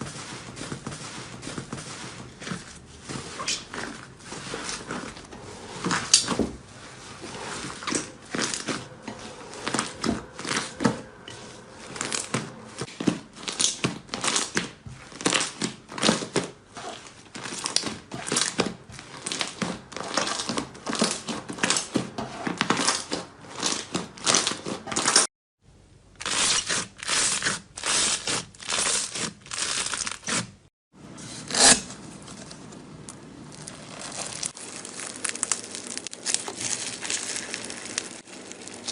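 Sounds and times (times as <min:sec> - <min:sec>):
slime squeezed crackling: 0:33.4 - 0:38.9.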